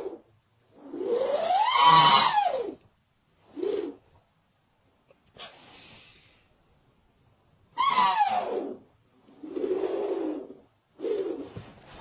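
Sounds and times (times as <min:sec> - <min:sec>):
breathy exhale: 0:05.4 - 0:06.5.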